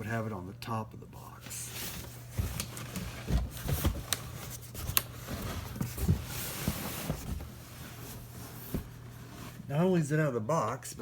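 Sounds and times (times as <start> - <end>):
cardboard box knocks and scrapes: 2.3 - 9.7.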